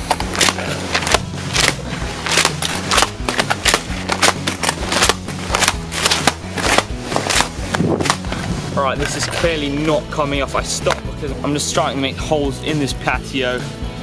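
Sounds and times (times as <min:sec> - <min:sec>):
hole punch clacking and scraping: 0:00.0 - 0:09.6.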